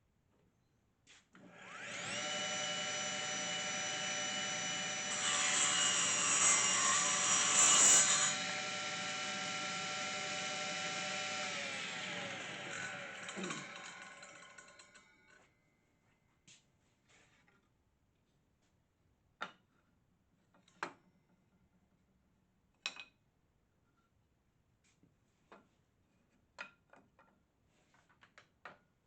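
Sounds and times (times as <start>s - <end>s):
saw cutting wood: 1.4s - 15.1s
table saw motor whine: 1.4s - 15.3s.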